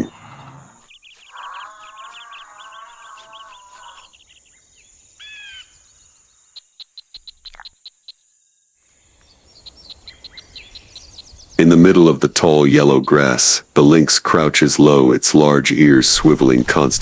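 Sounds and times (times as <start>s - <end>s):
high insect drone: 0.0s - 13.4s
birds chirping and warbling: 0.0s - 17.0s.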